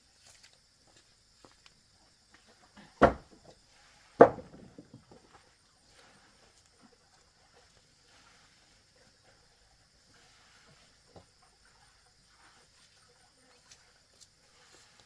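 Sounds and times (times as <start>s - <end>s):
heavy thuds: 3.0s - 3.4s, 4.2s - 5.1s
small knocks: 3.0s - 3.5s, 4.2s - 5.3s.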